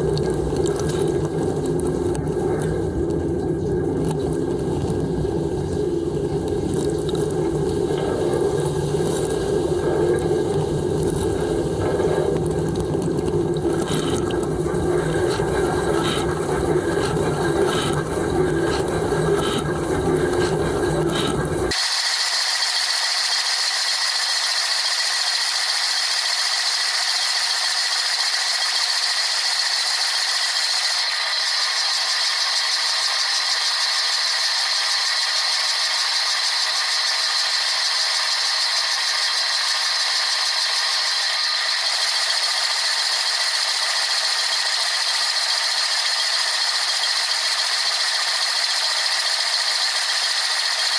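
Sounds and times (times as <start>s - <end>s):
dishwasher deep churning: 0.0s - 21.8s
water spraying rattling hiss: 0.0s - 50.9s.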